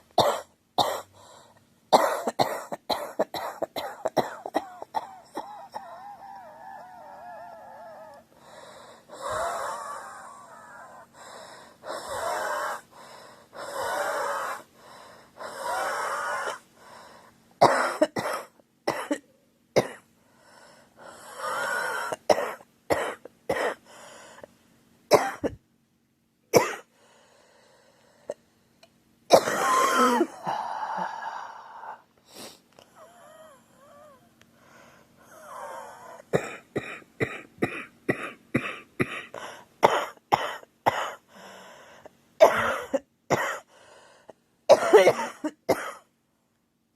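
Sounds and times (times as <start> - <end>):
girl coughing: 0.2 - 1.1, 1.9 - 6.0, 17.6 - 20.0, 22.3 - 23.8, 25.1 - 25.6, 26.6 - 26.9, 29.3 - 30.6, 36.3 - 41.2, 42.4 - 43.7, 44.7 - 46.1.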